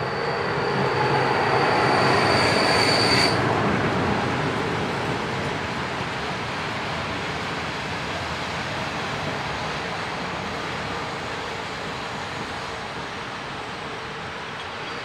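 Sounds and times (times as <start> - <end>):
train rumbling along track: 0.0 - 15.0.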